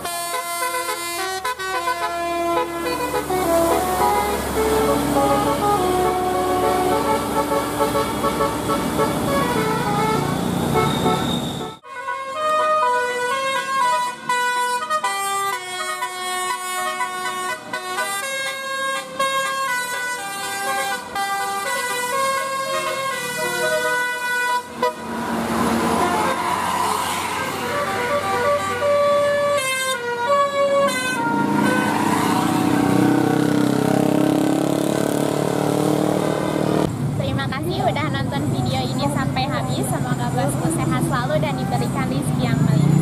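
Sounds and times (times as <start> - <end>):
horn-like held tones with noise: 0.0 - 25.1.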